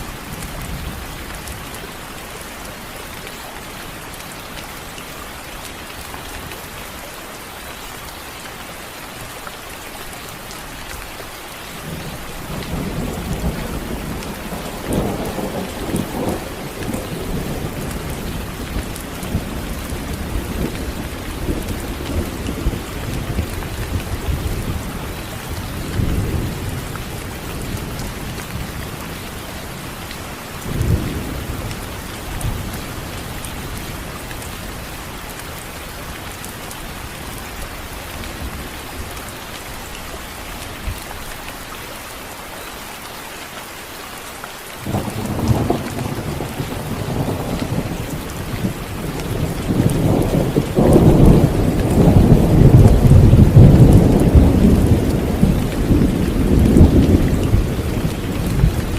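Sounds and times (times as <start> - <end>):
steady rain: 0.0 - 58.9
rolling thunder rumble: 44.8 - 58.9.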